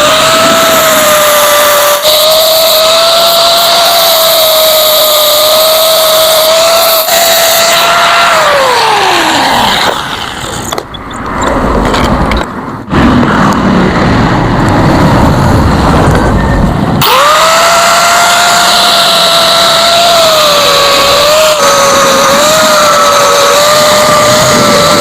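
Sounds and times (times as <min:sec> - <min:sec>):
power tool on metal: 0:00.0 - 0:10.4, 0:17.0 - 0:25.0.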